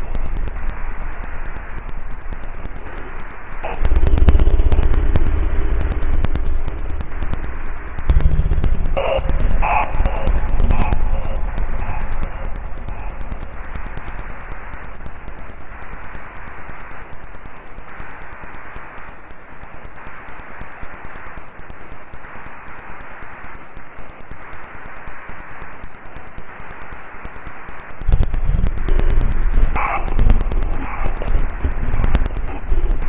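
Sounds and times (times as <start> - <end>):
low rumble: 0.0 - 15.8
faint crackling: 0.0 - 33.0
microphone hiss and static: 0.0 - 33.0.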